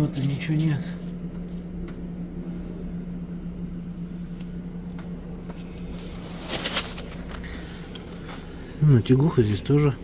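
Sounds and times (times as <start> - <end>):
rustle or scrape: 6.0 - 7.2.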